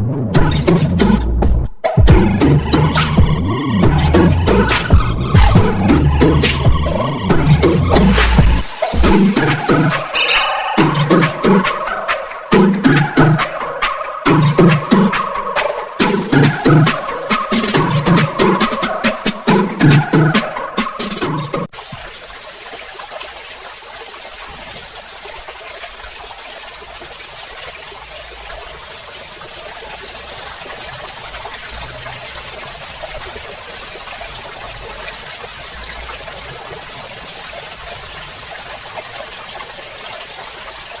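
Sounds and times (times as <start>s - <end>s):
water pouring and splashing: 3.0s - 19.5s, 21.6s - 41.0s.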